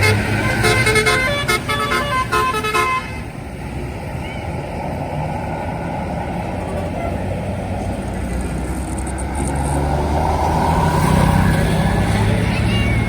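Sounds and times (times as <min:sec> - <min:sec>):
musical air horn tune: 0:00.0 - 0:03.3
bus engine and road noise: 0:00.0 - 0:13.0.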